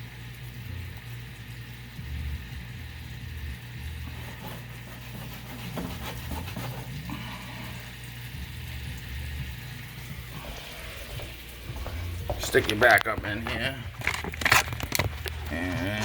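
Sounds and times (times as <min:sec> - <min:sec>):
fish sizzling in pan: 0:00.0 - 0:16.0.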